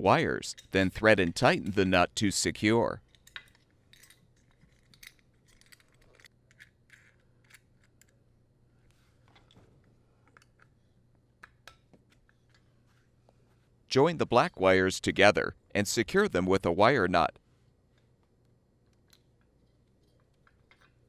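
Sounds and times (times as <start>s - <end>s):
small clicks and light scrapes: 17.9s - 21.0s.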